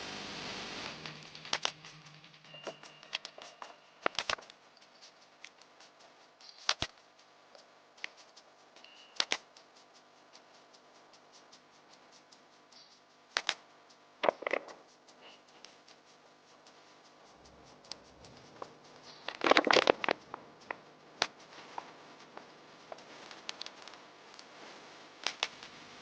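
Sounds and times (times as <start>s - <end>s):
faint steady hum: 0.0s - 26.0s
sharp clicks and knocks: 14.2s - 14.8s.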